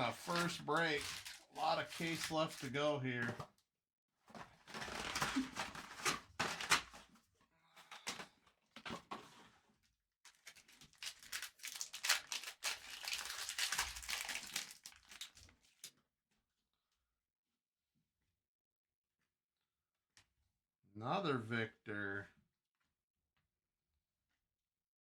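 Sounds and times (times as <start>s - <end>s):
plastic wrapping crinkling and tearing: 0.0s - 2.8s, 4.6s - 7.0s, 10.3s - 15.9s.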